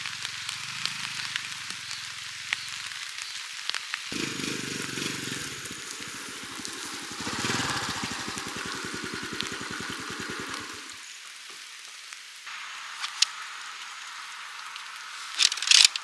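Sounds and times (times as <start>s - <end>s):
food sizzling in a pan: 0.0s - 16.0s
sharp pops: 13.0s - 13.4s.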